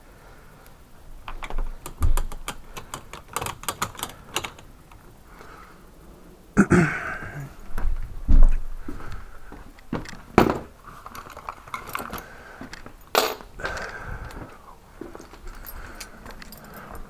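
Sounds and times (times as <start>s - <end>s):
metallic clicks and knocks of tools: 1.2s - 5.0s, 9.8s - 14.4s, 15.2s - 17.0s.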